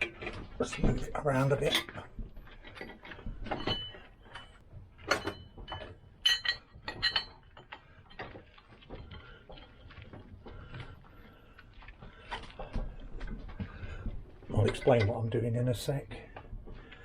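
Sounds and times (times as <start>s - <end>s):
metal parts clinking in a vice: 2.6s - 8.3s.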